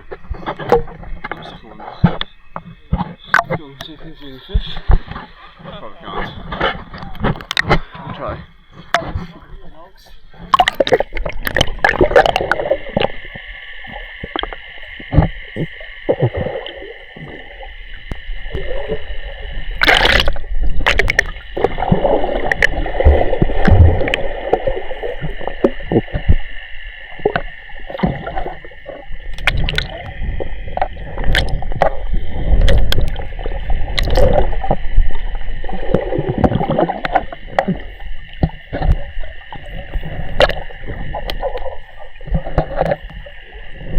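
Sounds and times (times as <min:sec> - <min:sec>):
water splashes: 0:00.0 - 0:43.9
river water sloshing and gurgling: 0:10.4 - 0:13.2, 0:19.8 - 0:26.5, 0:27.2 - 0:43.9.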